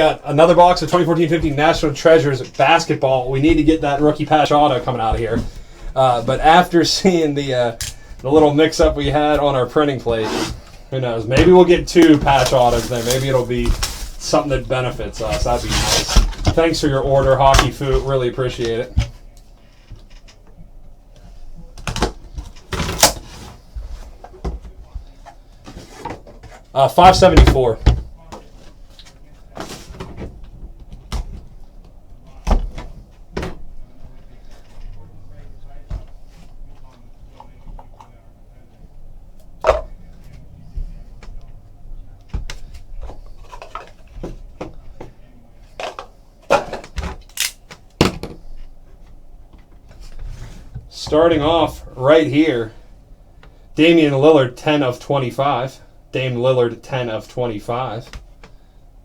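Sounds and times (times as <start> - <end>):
box rustles and knocks: 11.3 - 18.1.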